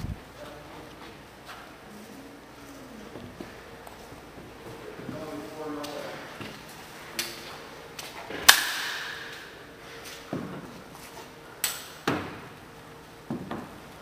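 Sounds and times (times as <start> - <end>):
airsoft gunshots echoing indoors: 8.5 - 9.3.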